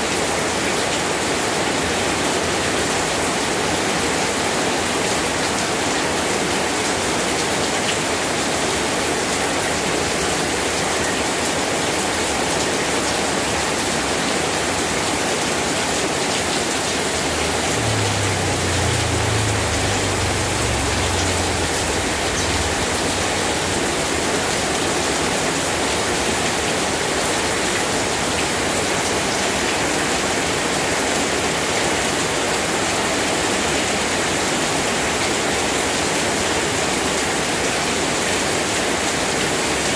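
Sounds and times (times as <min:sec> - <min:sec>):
heavy rain: 0:12.2 - 0:35.2
low rumble: 0:17.1 - 0:24.6.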